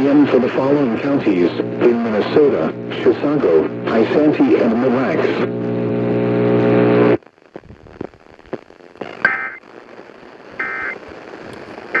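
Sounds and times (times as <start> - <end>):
faint clicks and crackle: 5.2 - 12.0.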